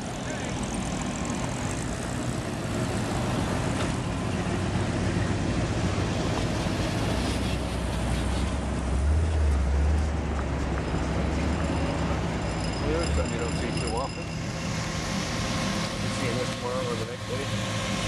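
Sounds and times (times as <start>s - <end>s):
street noise: 0.0s - 18.0s
vehicle engine low rumble: 0.0s - 18.0s.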